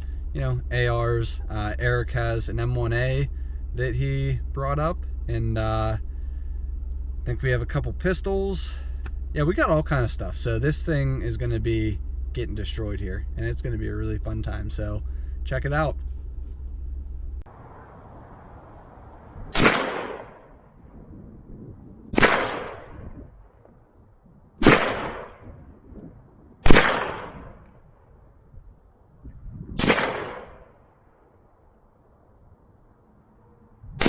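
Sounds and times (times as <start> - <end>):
gunshots with echo: 19.5 - 20.5, 22.1 - 23.1, 24.6 - 25.6, 26.6 - 27.6, 29.8 - 30.7.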